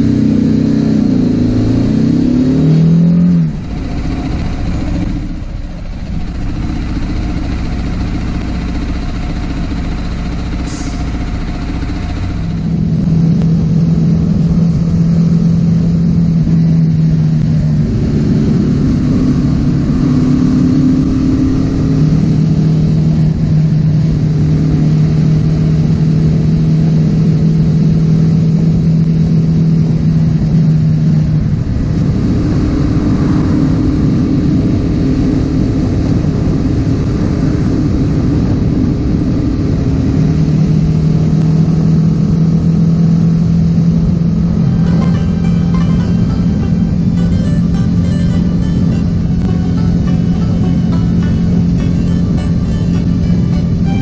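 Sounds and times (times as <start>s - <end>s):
motorcycle engine running: 0.0s - 27.2s.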